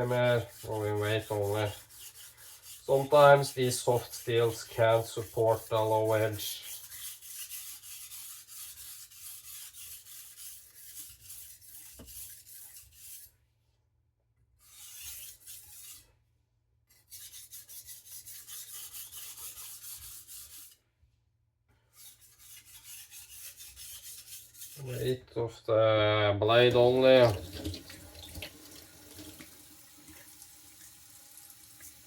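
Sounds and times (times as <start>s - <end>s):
knife scraping on whetstone: 0.0s - 13.4s, 14.6s - 16.1s, 16.9s - 20.8s, 21.9s - 25.1s.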